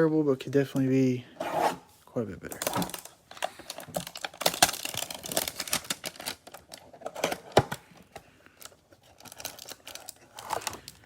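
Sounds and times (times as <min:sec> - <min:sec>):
cards and cardboard rustling: 0:02.4 - 0:11.0.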